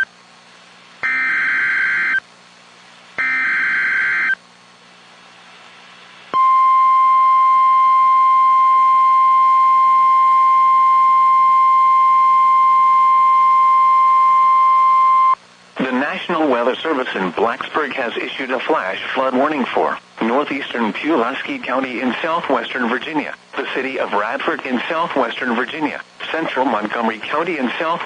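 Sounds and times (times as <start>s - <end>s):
steady warning alarm tone: 1.0s - 2.2s, 3.2s - 4.4s
warbling data tone: 1.0s - 2.2s, 3.2s - 4.4s.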